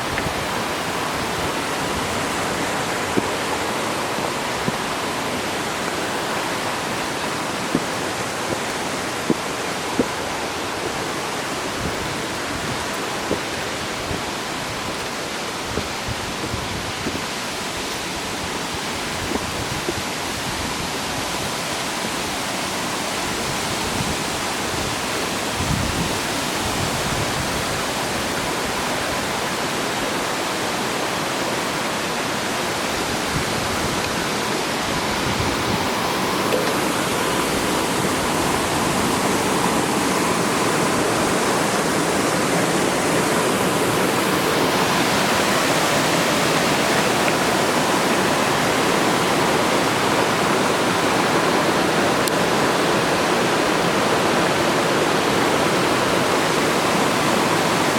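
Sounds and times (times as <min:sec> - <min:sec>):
waterfall rushing: 0:00.0 - 0:57.9.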